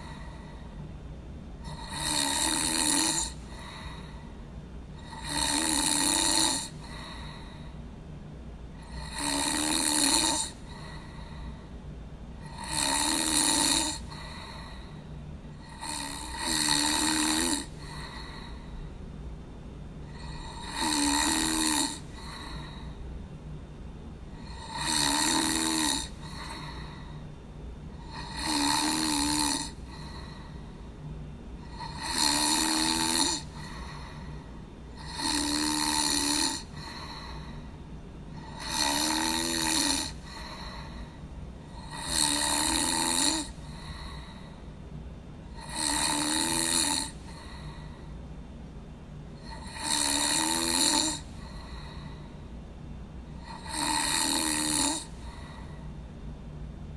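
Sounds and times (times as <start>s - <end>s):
person snoring: 0.0s - 0.7s, 1.6s - 4.2s, 5.0s - 7.7s, 8.8s - 11.6s, 12.4s - 18.8s, 20.1s - 23.0s, 24.4s - 27.2s, 27.9s - 30.7s, 31.6s - 37.7s, 38.3s - 44.6s, 45.5s - 48.1s, 49.4s - 52.3s, 53.4s - 55.8s
faint low hum: 0.0s - 56.9s.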